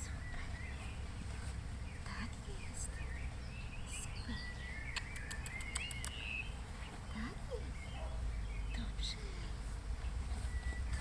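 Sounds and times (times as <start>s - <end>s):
birds chirping: 0.0s - 11.0s
whistled bird notes: 2.9s - 7.0s
clicking bird calls: 4.9s - 7.0s.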